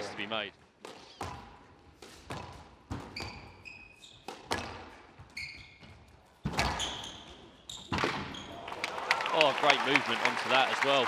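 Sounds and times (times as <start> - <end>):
shoes squeaking on court: 1.0 - 8.6.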